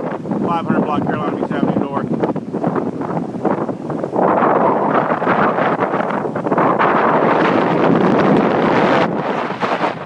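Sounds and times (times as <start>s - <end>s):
hurricane wind roaring: 0.0s - 10.0s.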